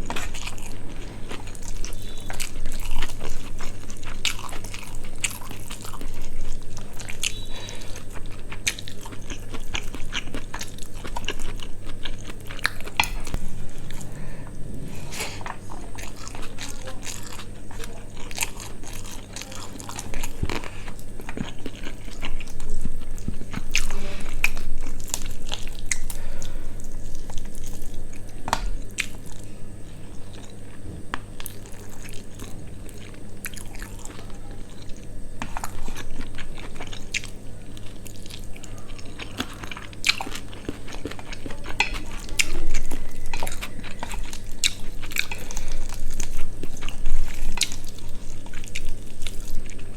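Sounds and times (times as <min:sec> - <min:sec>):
person chewing food: 0:00.0 - 0:49.9.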